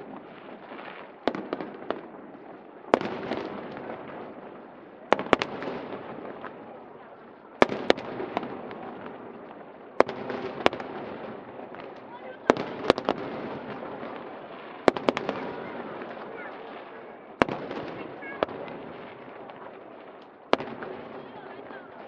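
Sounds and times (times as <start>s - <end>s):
crowd chatter: 0.0s - 22.0s.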